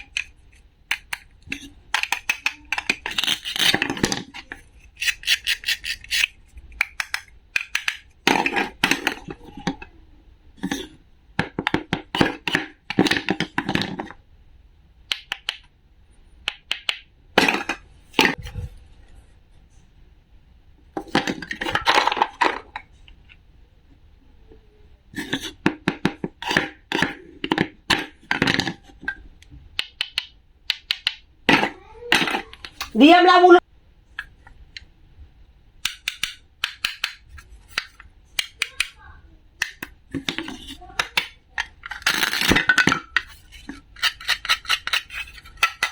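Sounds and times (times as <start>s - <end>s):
hard objects clicking and knocking: 0.0s - 9.9s, 10.6s - 14.2s, 16.4s - 18.4s, 20.9s - 23.4s, 25.2s - 33.2s, 35.8s - 45.9s.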